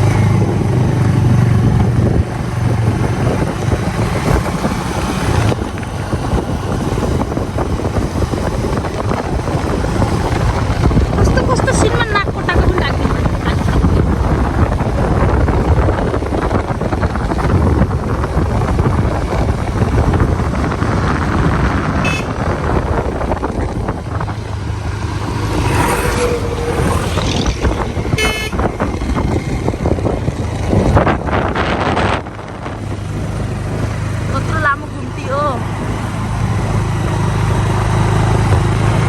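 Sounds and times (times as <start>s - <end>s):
vehicle engine and road rumble: 0.0s - 39.0s
car horn toots: 22.0s - 22.6s, 28.1s - 28.8s.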